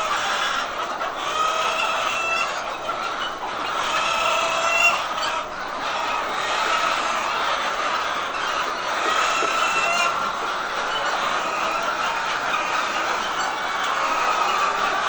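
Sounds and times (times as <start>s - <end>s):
hen drawn-out calls: 0.0s - 15.0s
hens clucking: 0.0s - 15.0s.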